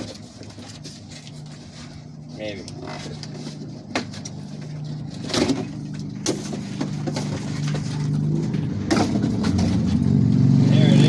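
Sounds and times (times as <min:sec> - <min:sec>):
steady low hum: 0:00.0 - 0:11.0
chainsaw and packaging knocking: 0:05.2 - 0:09.9.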